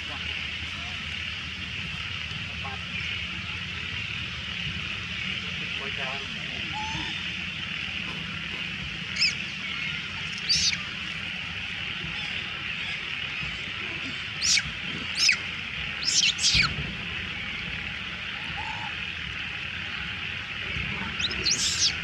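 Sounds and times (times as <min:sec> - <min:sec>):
monkey squealing cries: 0:09.1 - 0:09.5, 0:10.3 - 0:10.9, 0:14.1 - 0:16.7, 0:21.1 - 0:22.0.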